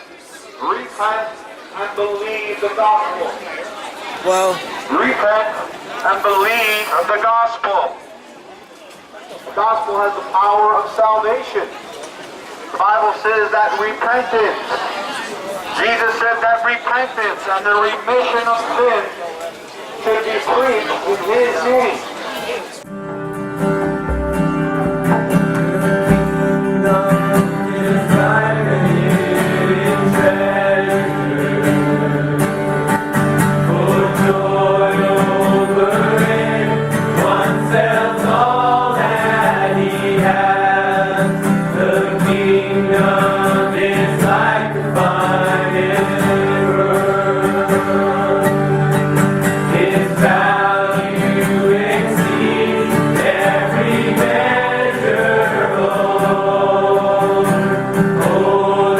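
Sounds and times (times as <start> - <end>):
choir singing: 6.0 - 7.1, 26.2 - 58.9
instrumental accompaniment: 22.9 - 26.8.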